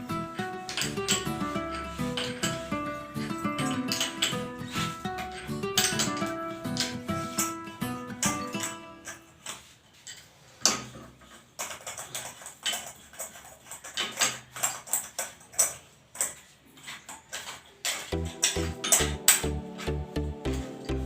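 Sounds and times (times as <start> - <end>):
background music with steady beat: 0.0 - 9.4, 18.1 - 21.0
metal fittings and tools clicking: 0.6 - 7.6, 8.2 - 19.9.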